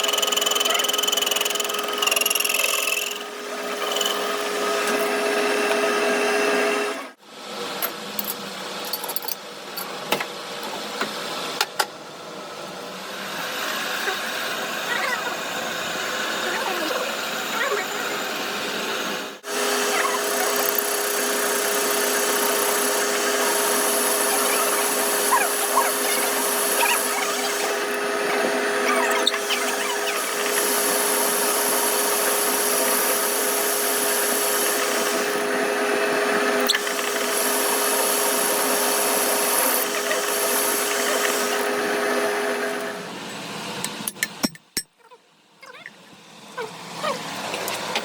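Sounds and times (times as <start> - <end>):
power tool humming: 13.3 - 43.1.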